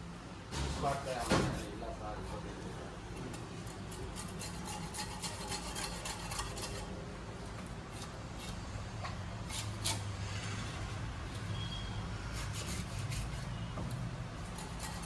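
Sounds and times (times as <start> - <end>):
knife scraping on cutting board: 0.6 - 7.0, 7.9 - 15.0.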